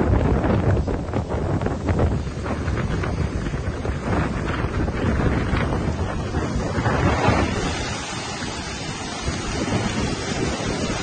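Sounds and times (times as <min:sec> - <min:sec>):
floodwater rushing: 0:00.0 - 0:11.0
wind buffeting microphone: 0:00.0 - 0:11.0.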